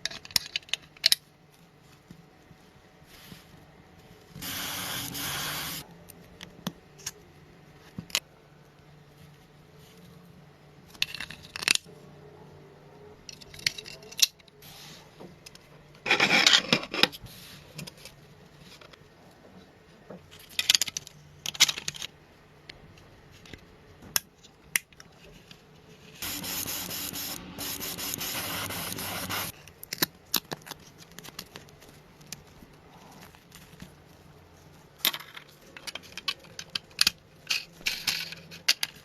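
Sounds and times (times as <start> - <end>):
rubbing and scraping handling noises: 1.5 - 5.9, 23.1 - 29.8
even hiss: 4.4 - 5.8, 26.2 - 29.5.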